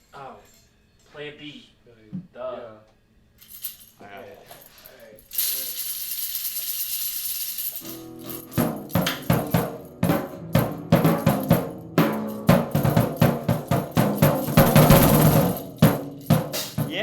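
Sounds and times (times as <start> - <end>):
steady high hiss: 3.4 - 8.7
held guitar note: 7.8 - 13.5
drums hitting unevenly: 7.8 - 17.0.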